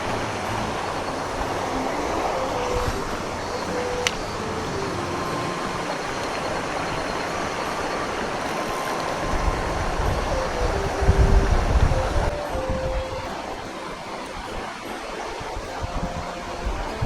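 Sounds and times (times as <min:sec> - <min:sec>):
wind rumble on microphone: 0:00.0 - 0:14.8, 0:15.4 - 0:17.0
mountain stream rushing: 0:00.0 - 0:17.0.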